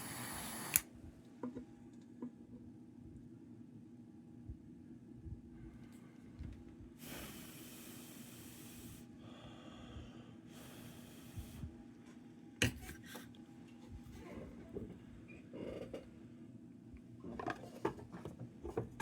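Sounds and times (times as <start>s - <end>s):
air hissing: 0.0s - 0.8s, 7.0s - 9.1s, 10.5s - 11.7s.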